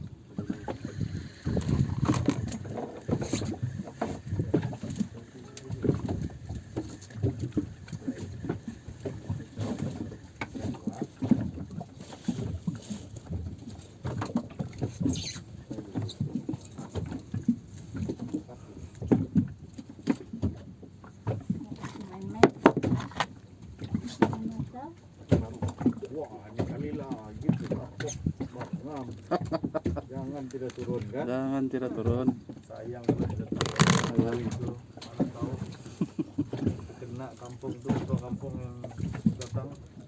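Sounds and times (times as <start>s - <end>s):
knocks and splashes: 0.0s - 40.0s
water lapping against boat hull: 0.0s - 40.0s.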